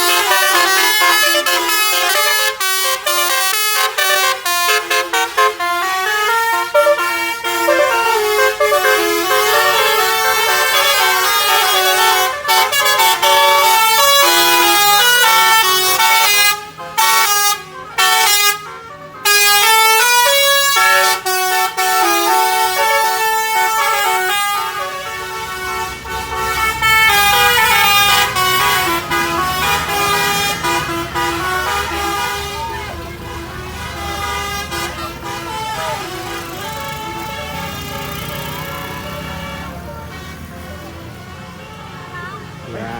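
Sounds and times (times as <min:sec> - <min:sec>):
musical air horn melody: 0:00.0 - 0:41.9.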